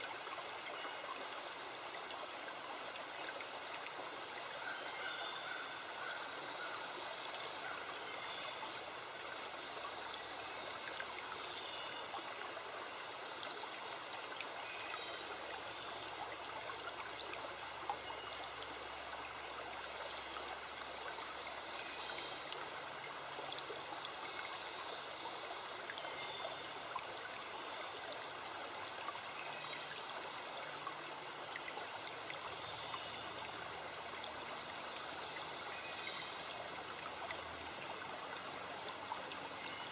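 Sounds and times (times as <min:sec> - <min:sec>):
stream flowing water: 0:00.0 - 0:39.9.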